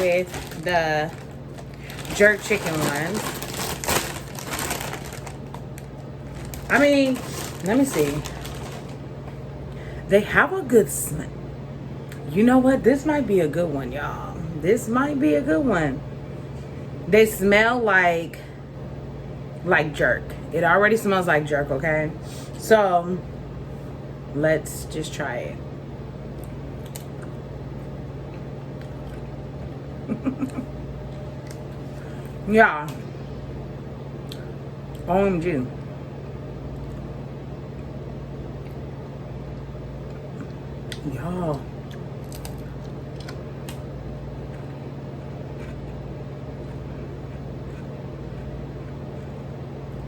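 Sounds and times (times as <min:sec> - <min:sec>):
potato chip crunching: 0:00.0 - 0:09.0, 0:40.9 - 0:43.8
steady low hum: 0:00.0 - 0:50.0.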